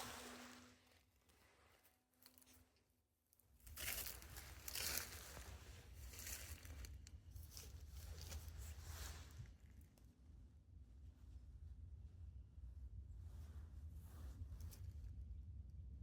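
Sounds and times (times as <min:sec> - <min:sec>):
footsteps crunching through dry leaves: 0:03.7 - 0:06.9
twigs and clothing brushing: 0:03.7 - 0:06.9.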